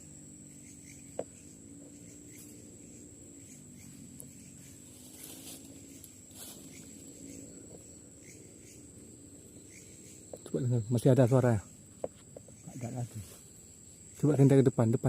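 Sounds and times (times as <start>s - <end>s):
crickets chirping: 0.0s - 15.0s
faint rustles: 1.8s - 8.1s, 11.6s - 14.3s.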